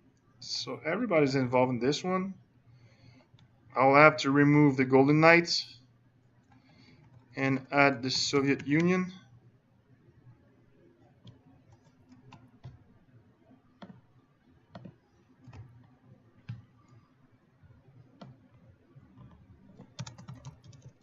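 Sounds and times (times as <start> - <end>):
computer mouse clicks: 6.4 - 7.3, 11.2 - 12.8, 13.8 - 14.0, 14.7 - 17.0, 18.0 - 21.0
keyboard keystrokes: 14.7 - 15.8, 19.2 - 21.0.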